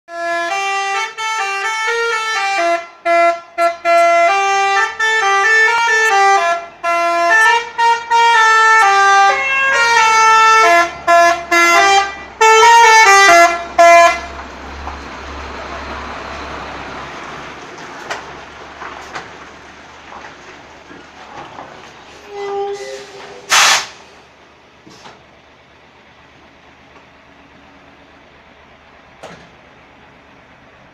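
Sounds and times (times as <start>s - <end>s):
horn tootling tune: 0.1s - 14.4s, 22.2s - 24.0s.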